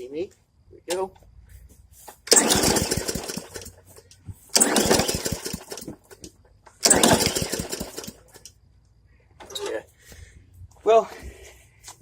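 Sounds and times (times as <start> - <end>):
lawn mower engine cranking: 2.2 - 8.5.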